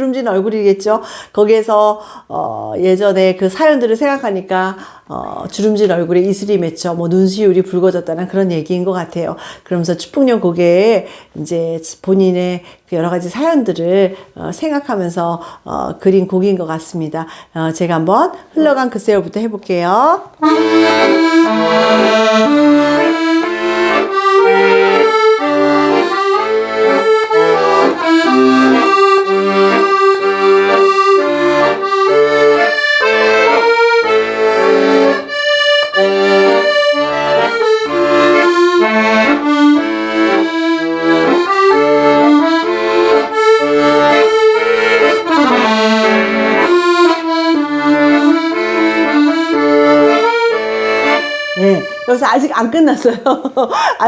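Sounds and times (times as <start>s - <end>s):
solo accordion melody: 20.3s - 53.1s.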